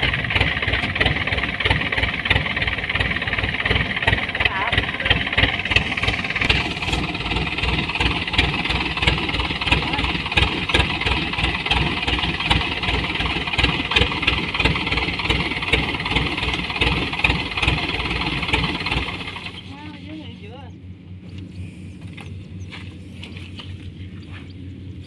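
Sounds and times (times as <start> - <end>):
farm machine engine running: 0.0 - 25.0.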